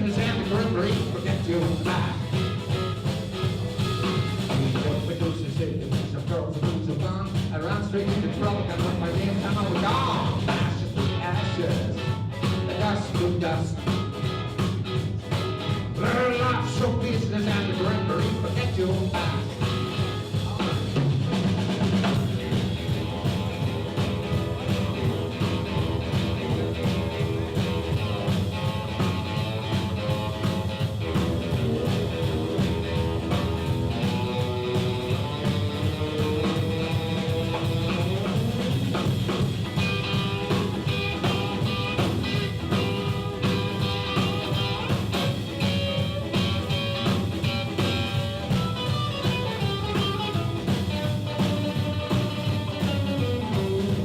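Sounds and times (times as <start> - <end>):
drum kit beat: 0.0 - 54.0
electric guitar lines: 0.0 - 54.0.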